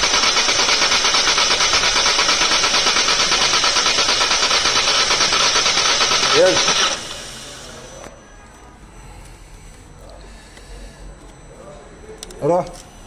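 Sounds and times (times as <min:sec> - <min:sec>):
starter motor cranking engine: 0:00.0 - 0:08.1.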